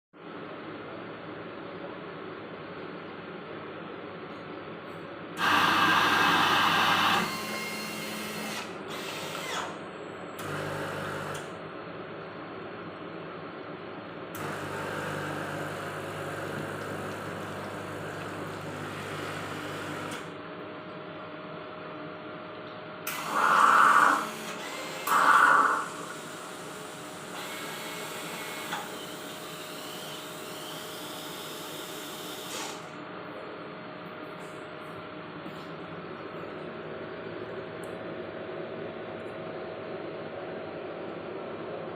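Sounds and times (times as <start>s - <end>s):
vending machine loud bursts: 5.4s - 8.6s
coffee machine humming: 5.4s - 11.6s, 14.4s - 20.4s, 23.1s - 32.6s
coffee grinder running: 14.4s - 20.2s.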